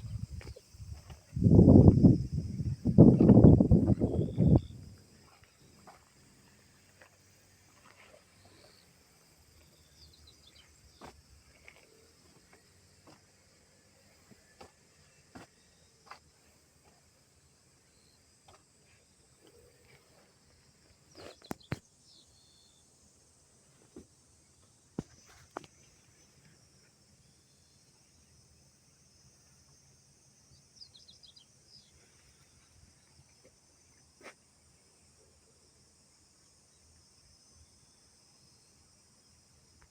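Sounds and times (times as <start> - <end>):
faint insect chirring: 0.0 - 39.9
faint high chirps: 1.4 - 5.5.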